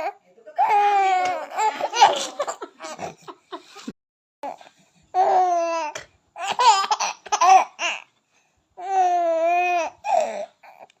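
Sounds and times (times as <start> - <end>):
baby laughing: 1.5 - 3.3, 5.6 - 8.1.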